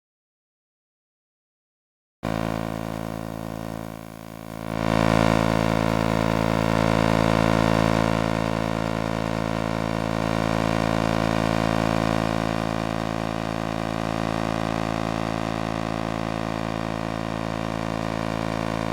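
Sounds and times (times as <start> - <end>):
steady electrical hum: 2.4 - 18.9.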